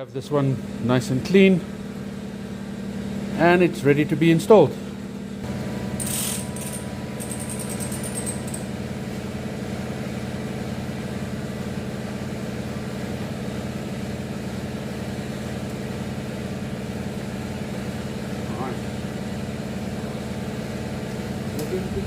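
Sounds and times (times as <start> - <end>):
motor humming: 5.2 - 10.1.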